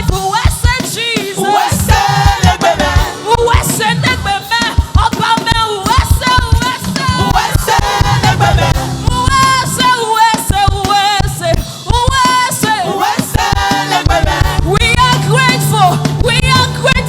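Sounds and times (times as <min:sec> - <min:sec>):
band with drums: 0:00.0 - 0:17.0
gospel singing voices: 0:00.0 - 0:17.0.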